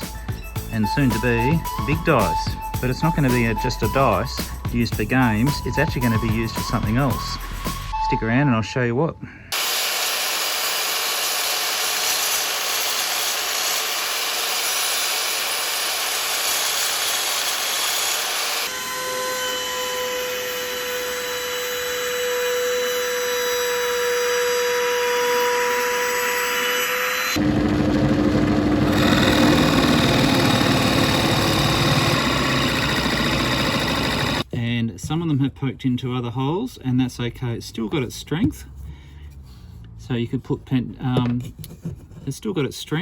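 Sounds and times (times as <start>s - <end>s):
power tool hissing: 9.5s - 34.4s
drilling into wood: 9.5s - 34.5s
motor whining: 14.0s - 34.4s.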